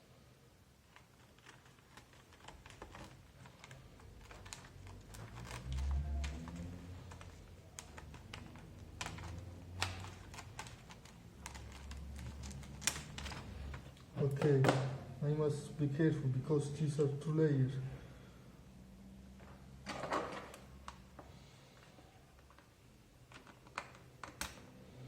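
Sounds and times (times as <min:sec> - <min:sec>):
scissors cutting plastic keyboard: 0:01.0 - 0:13.9.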